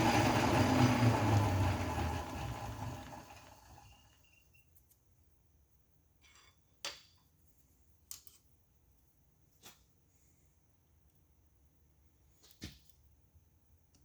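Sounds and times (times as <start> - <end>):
lathe spindle hum: 0.0 - 4.4.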